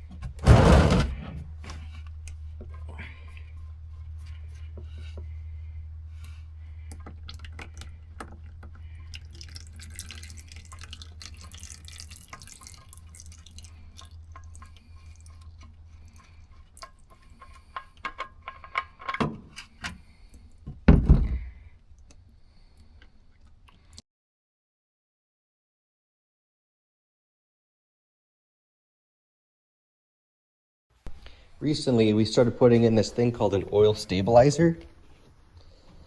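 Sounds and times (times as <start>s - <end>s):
loud thump: 0.4s - 1.2s
oil draining and dripping: 6.2s - 20.8s, 21.4s - 24.0s.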